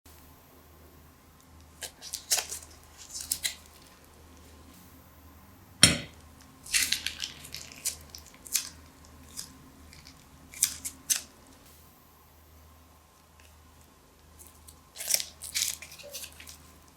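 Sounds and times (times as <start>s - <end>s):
crunchy slime crackling: 1.7s - 4.7s, 5.8s - 11.7s, 14.4s - 16.9s.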